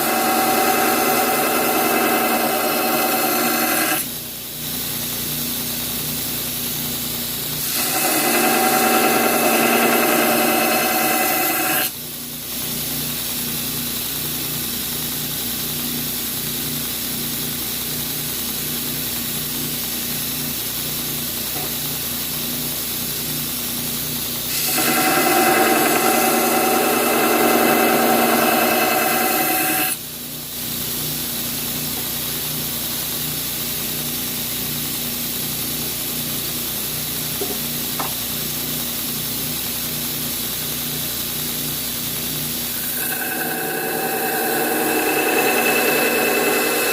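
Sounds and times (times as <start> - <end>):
high grinding whine of steel: 0.0 - 4.1, 7.6 - 12.0, 24.5 - 30.0, 42.6 - 46.9
power grinder running: 0.0 - 4.1, 7.6 - 11.9, 24.5 - 30.0, 42.6 - 46.9.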